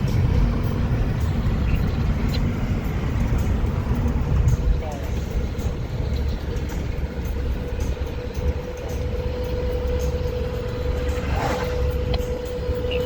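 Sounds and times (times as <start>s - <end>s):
road and engine rumble: 0.0s - 13.0s
warning siren steady tone: 7.2s - 13.0s.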